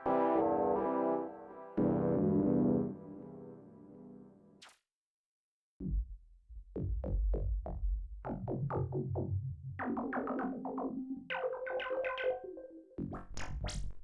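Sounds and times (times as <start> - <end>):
deep synth bass: 5.8 - 9.8.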